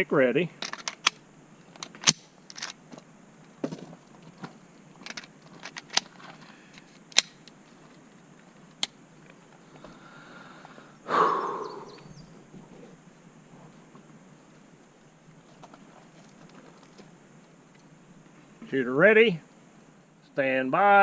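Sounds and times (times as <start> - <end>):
rifle clicks and clacks: 1.8 - 2.8, 7.1 - 7.6.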